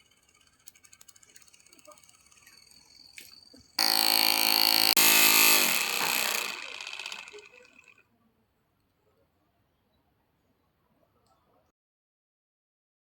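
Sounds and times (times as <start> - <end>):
small electric motor whine: 0.0 - 7.9.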